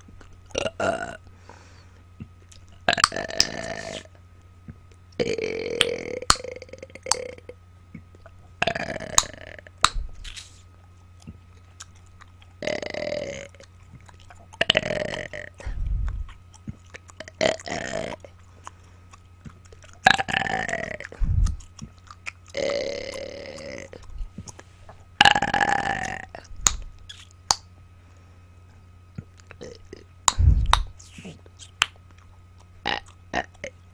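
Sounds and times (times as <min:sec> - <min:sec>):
mouth clicks: 0:02.2 - 0:04.1, 0:05.2 - 0:11.9, 0:25.2 - 0:27.7, 0:29.2 - 0:32.3.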